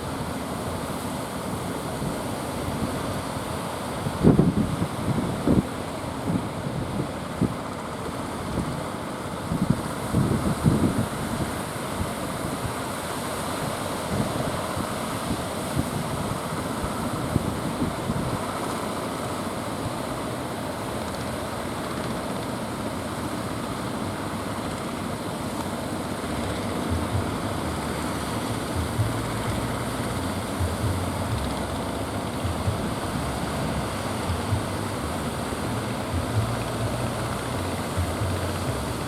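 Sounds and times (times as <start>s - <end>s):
surf washing: 0.0s - 39.0s
wind buffeting microphone: 4.1s - 7.7s, 9.5s - 12.8s, 26.2s - 39.0s
low engine hum: 23.2s - 39.0s.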